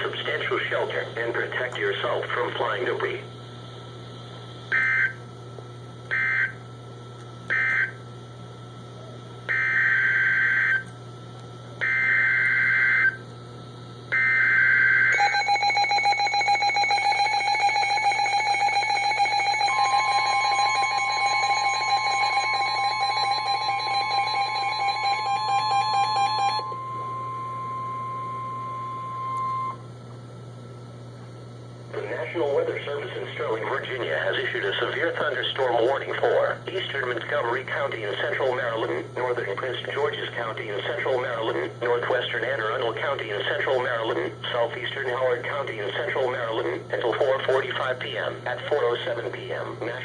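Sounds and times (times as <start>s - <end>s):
two-tone attention signal: 14.2s - 29.8s
steady tone: 18.8s - 29.8s.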